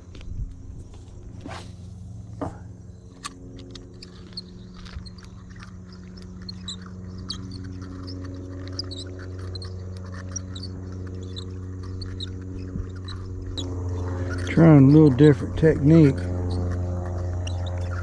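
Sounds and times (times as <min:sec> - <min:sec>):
low motor hum: 0:00.0 - 0:18.0.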